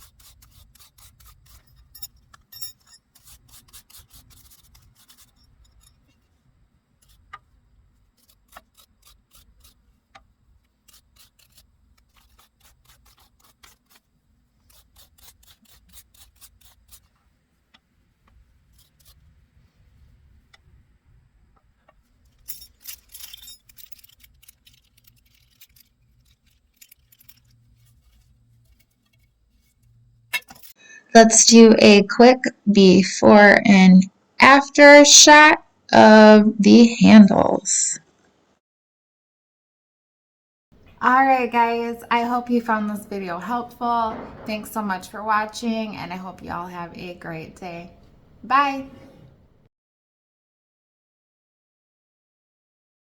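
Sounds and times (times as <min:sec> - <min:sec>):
wire brush scrubbing metal: 0:00.0 - 0:20.5, 0:22.0 - 0:30.8.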